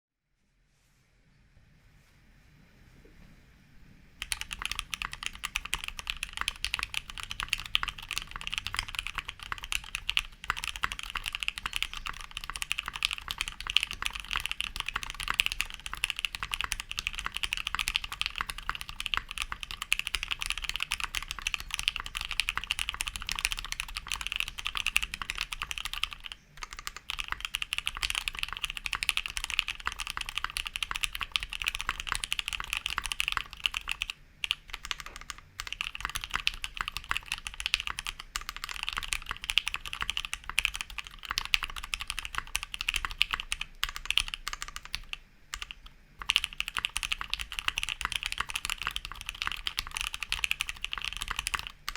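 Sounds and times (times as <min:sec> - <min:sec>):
fast mechanical keyboard typing: 0:04.2 - 0:51.9.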